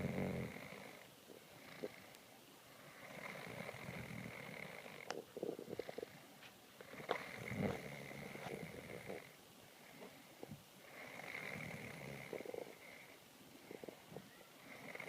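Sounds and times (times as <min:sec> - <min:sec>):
person snoring: 0:01.6 - 0:02.1, 0:03.0 - 0:06.2, 0:06.9 - 0:09.3, 0:10.9 - 0:14.0, 0:14.6 - 0:15.0.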